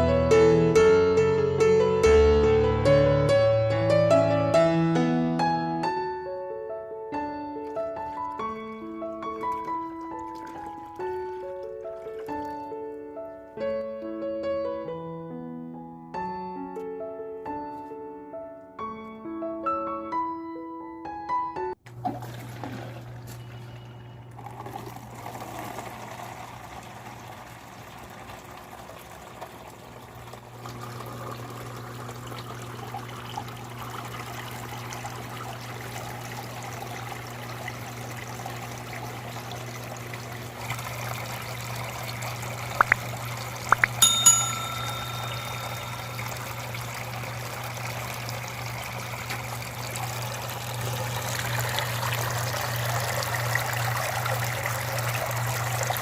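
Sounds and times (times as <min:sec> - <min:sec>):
water trickling down fountain: 0:07.7 - 0:13.4, 0:22.1 - 0:56.0
metallic ring: 0:43.9 - 0:46.7.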